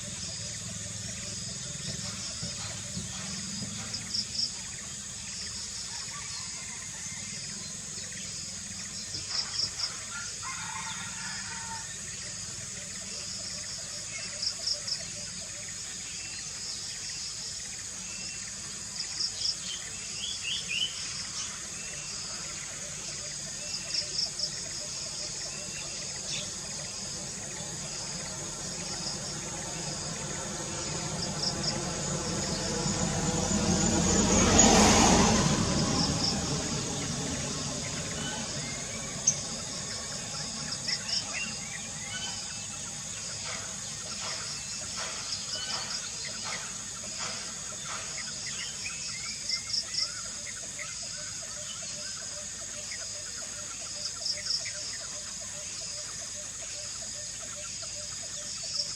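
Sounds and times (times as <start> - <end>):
birds chirping: 0.0 - 58.9
insect drone with pulsing trills: 0.0 - 58.9
vehicle passing: 19.7 - 50.2.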